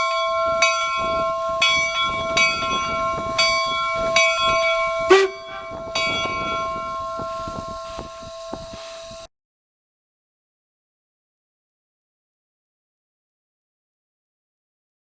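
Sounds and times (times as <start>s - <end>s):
locomotive bell ringing: 0.0s - 8.0s.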